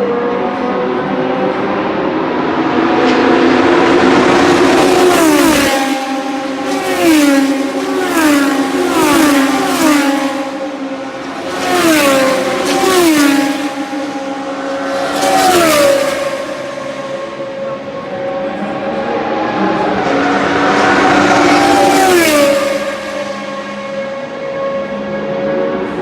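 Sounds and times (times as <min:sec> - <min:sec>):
racing car engines passing by: 0:00.0 - 0:26.0.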